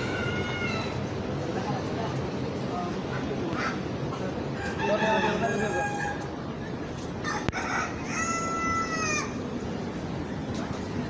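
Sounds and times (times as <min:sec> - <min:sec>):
steady background noise: 0:00.0 - 0:11.0
rooster crowing: 0:04.6 - 0:06.2, 0:07.2 - 0:09.4.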